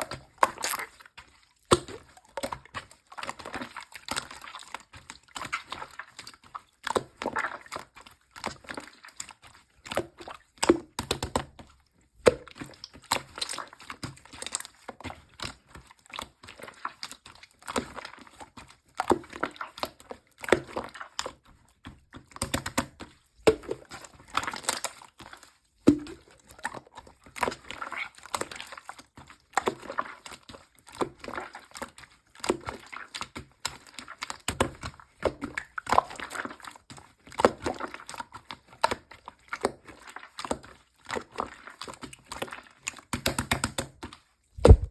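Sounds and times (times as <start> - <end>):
slime squelching and clicking: 38.9 - 44.9.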